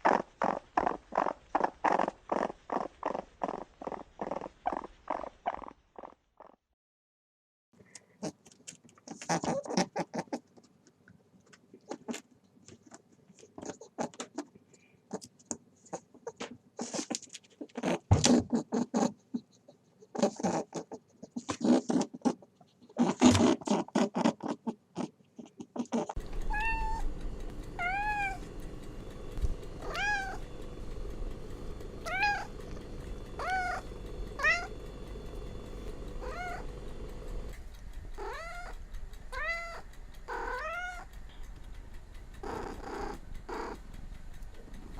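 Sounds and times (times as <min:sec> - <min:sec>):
clicking and crackling noise: 0:00.0 - 0:05.8, 0:07.8 - 0:44.9
cat meowing: 0:26.4 - 0:27.1, 0:27.8 - 0:28.5, 0:29.8 - 0:30.5, 0:32.0 - 0:32.6, 0:33.4 - 0:33.8, 0:34.4 - 0:34.8, 0:36.2 - 0:36.6, 0:38.2 - 0:41.1.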